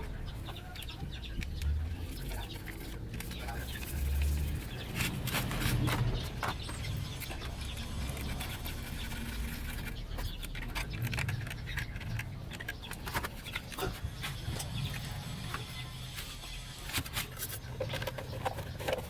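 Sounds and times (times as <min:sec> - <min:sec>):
small clicks taps and scratches: 0:00.8 - 0:15.7.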